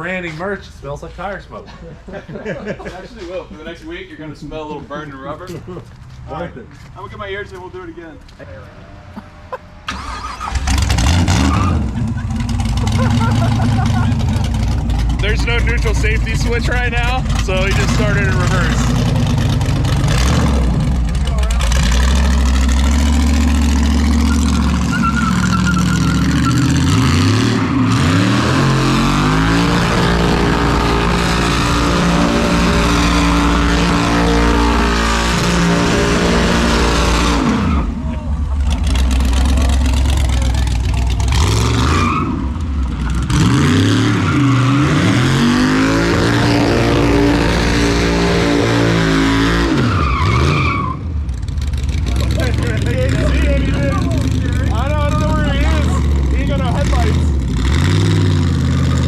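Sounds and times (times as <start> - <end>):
tyre noise from a burnout: 9.8 - 56.4
car engine revving hard: 9.9 - 38.0, 38.6 - 51.0, 51.8 - 59.0.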